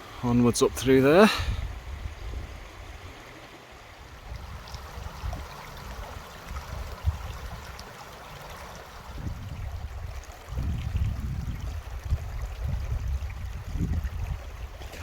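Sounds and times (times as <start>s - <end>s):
river rushing over rocks: 0.0s - 1.6s.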